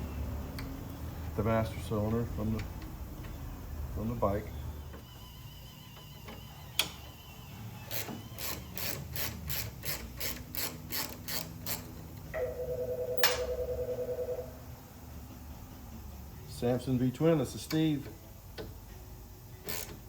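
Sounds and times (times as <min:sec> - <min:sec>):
ratchet wrench clicking: 0:07.9 - 0:12.0, 0:19.6 - 0:20.0
telephone ringing warbling tone: 0:12.4 - 0:14.8.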